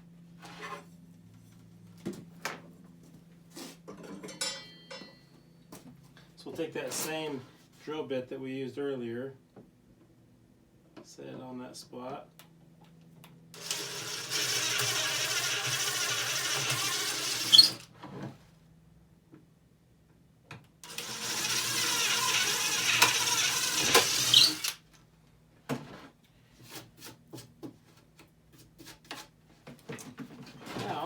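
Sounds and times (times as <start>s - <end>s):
power drill boring through plywood: 13.6s - 17.9s, 20.8s - 24.8s.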